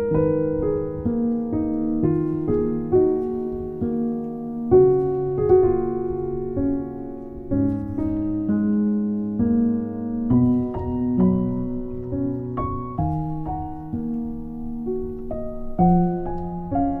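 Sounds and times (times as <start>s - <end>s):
slow piano piece: 0.0s - 17.0s.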